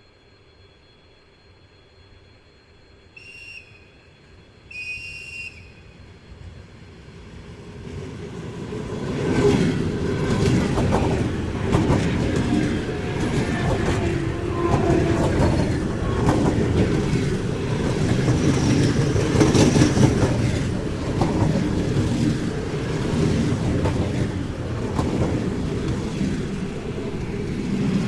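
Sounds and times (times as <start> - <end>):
train rumble and wheel clatter: 2.8 - 28.0
train whistle blasts: 3.1 - 6.0.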